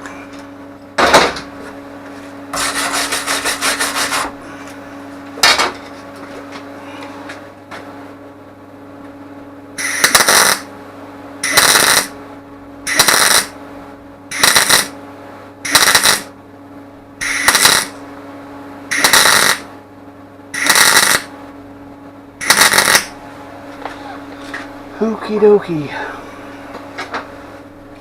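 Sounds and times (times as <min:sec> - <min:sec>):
steady welder hum: 0:00.0 - 0:28.0
welder bursts on sheet metal: 0:09.8 - 0:10.7, 0:11.4 - 0:12.2, 0:12.9 - 0:13.5, 0:14.3 - 0:15.0, 0:15.7 - 0:16.3, 0:17.2 - 0:18.0, 0:18.9 - 0:19.7, 0:20.6 - 0:21.3, 0:22.4 - 0:23.1.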